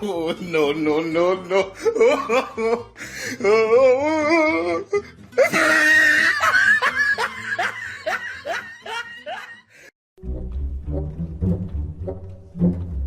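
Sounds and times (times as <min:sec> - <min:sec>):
person laughing: 0:00.0 - 0:09.9.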